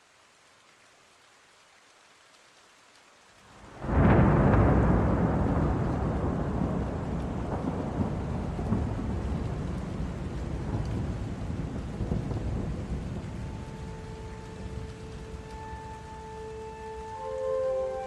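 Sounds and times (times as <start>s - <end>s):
steady rain: 0.0s - 18.0s
rolling rumble of thunder: 3.6s - 18.0s.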